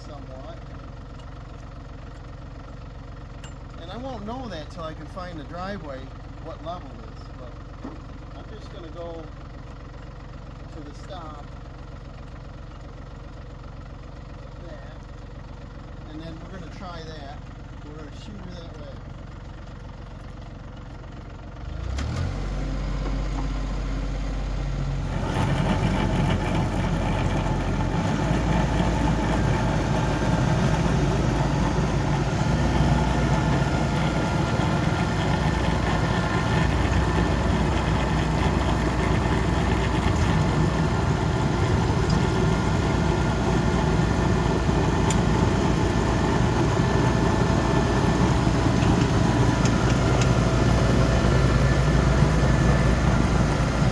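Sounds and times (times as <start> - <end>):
snowblower auger and fan spinning: 0.0 - 53.9
tractor engine revving: 21.7 - 53.9.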